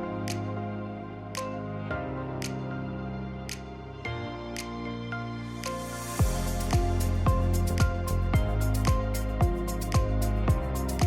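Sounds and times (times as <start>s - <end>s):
sustained chords over bass line: 6.2s - 11.0s.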